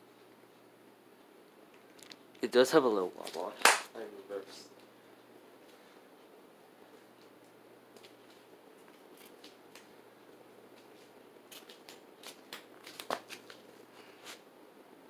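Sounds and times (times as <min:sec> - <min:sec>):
ceiling fan whirring: 0:00.0 - 0:15.0.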